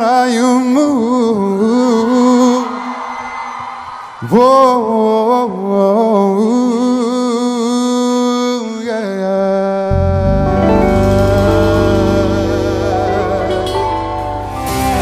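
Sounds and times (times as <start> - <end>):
bass and band playing: 9.9 - 15.0.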